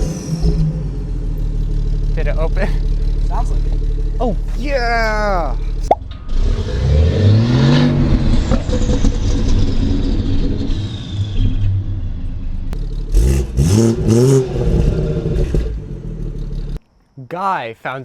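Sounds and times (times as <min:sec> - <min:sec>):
car engine revving and idling: 0:00.0 - 0:16.8.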